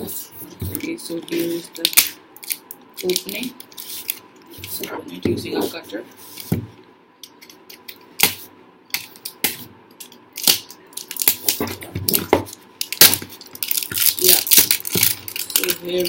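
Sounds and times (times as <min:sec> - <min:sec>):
packaging scraping: 0:10.5 - 0:16.0.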